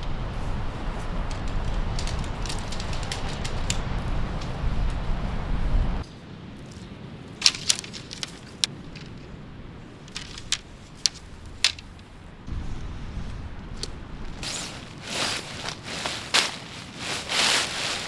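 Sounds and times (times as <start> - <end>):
wind buffeting microphone: 0.0 - 6.1, 7.1 - 18.0
light ticks and crackles: 0.0 - 9.3.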